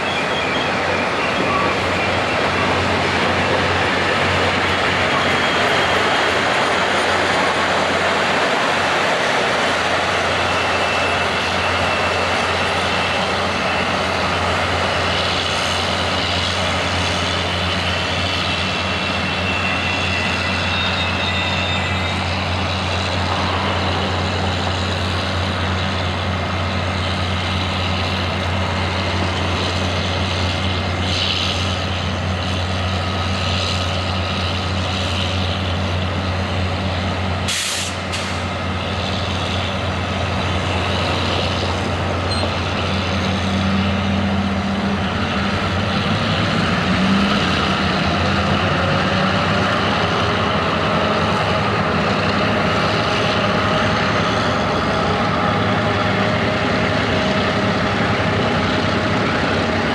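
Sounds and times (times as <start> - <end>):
diesel locomotive engine drone: 0.0 - 59.9
broad hiss: 37.5 - 38.5.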